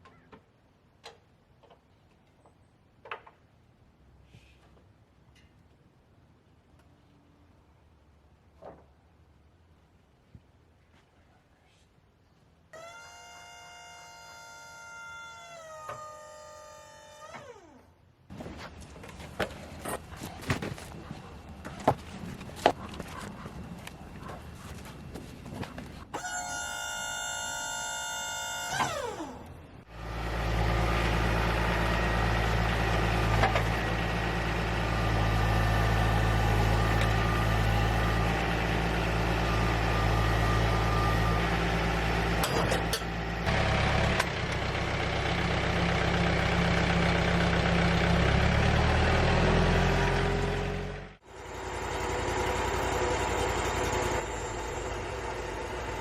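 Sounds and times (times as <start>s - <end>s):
large engine humming: 28.7s - 56.0s
quieter engine running: 28.8s - 56.0s.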